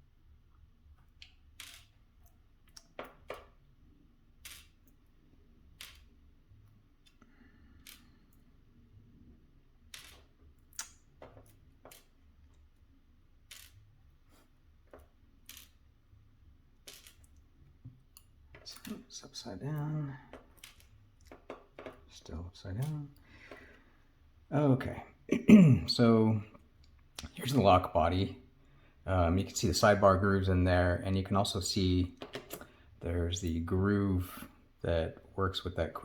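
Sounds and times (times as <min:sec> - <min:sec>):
small lock parts clicking: 0:01.0 - 0:03.7, 0:04.4 - 0:05.1, 0:05.7 - 0:08.6, 0:09.8 - 0:12.7, 0:13.4 - 0:14.1, 0:14.9 - 0:15.9, 0:16.8 - 0:19.0, 0:20.3 - 0:22.1.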